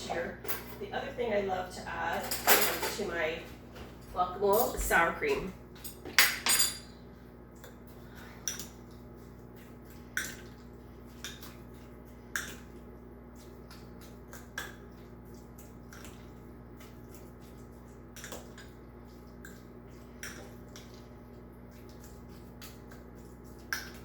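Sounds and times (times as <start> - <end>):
soft squishing of mashing: 7.0 - 24.0.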